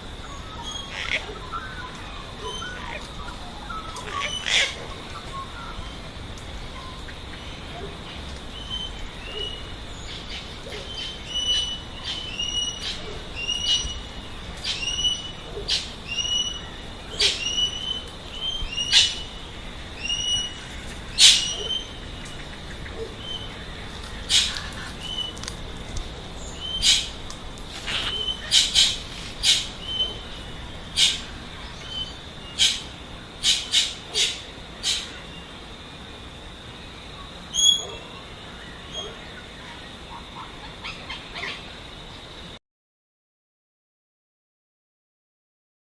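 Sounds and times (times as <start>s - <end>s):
bird whistled notes: 37.5s - 38.0s.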